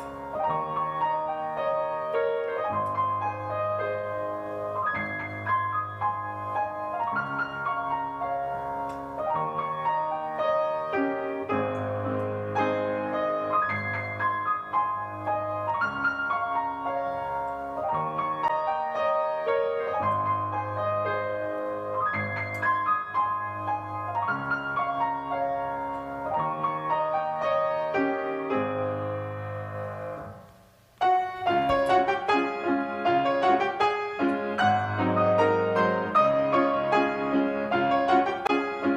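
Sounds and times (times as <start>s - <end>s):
piano music: 0.0s - 38.9s.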